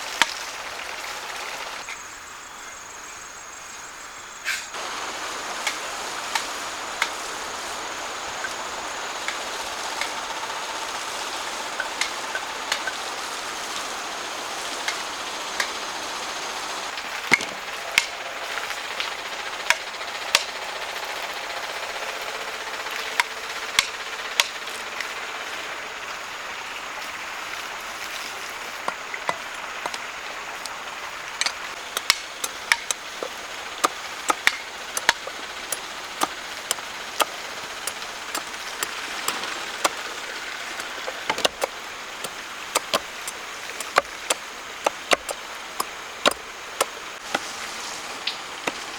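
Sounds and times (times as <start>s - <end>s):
hand tools knocking on wood: 31.4s - 40.0s, 40.8s - 47.5s.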